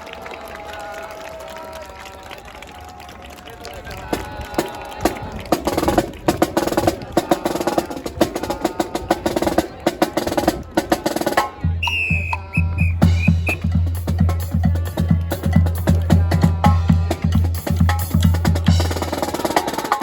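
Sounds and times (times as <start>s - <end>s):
marching band playing: 5.6s - 20.0s
snare drum cadence: 11.8s - 13.7s
strong bass beat: 11.8s - 18.8s.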